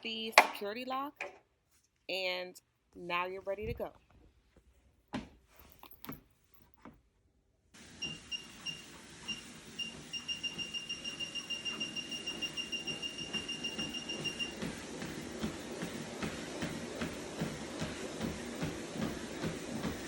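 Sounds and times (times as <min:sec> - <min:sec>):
treadmill belt and motor whine: 0:07.8 - 0:20.0.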